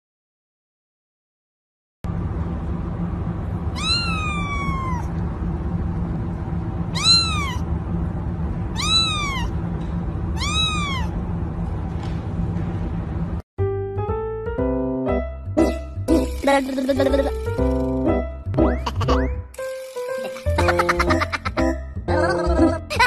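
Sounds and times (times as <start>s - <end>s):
low background hum: 2.1s - 13.4s, 15.5s - 23.0s
cat meowing: 3.7s - 5.2s, 6.9s - 7.7s, 8.7s - 9.6s, 10.4s - 11.2s.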